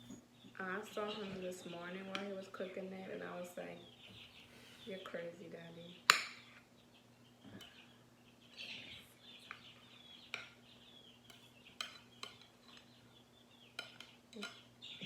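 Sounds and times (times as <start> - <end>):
cutlery clinking on plate: 13.8 - 14.6.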